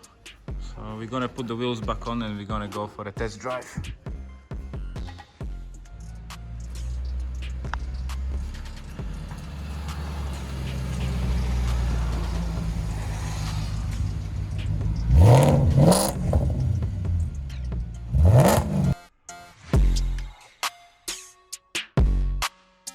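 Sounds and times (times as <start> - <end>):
car engine revving: 7.3 - 19.0.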